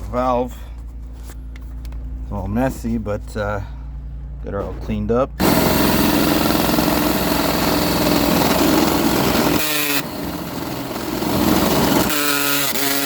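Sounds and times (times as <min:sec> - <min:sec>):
power drill boring: 0:05.4 - 0:13.0.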